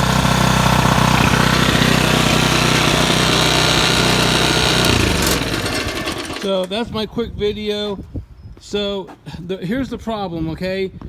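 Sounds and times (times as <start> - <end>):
small gasoline engine running: 0.0 - 6.8.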